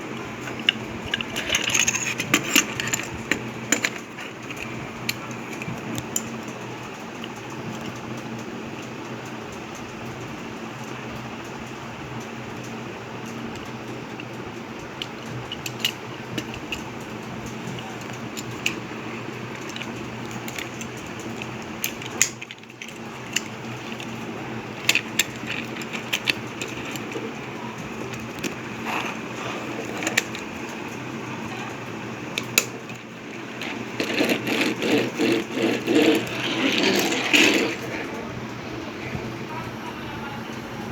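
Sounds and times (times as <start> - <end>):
steady hum: 0.0 - 8.8, 11.2 - 40.9
plastic toy parts clicking: 0.1 - 6.4, 15.0 - 38.0.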